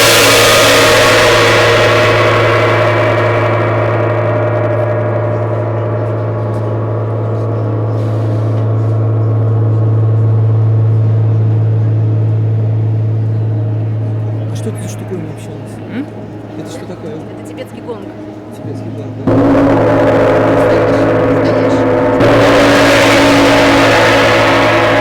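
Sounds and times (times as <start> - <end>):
gong ringing: 0.0 - 25.0.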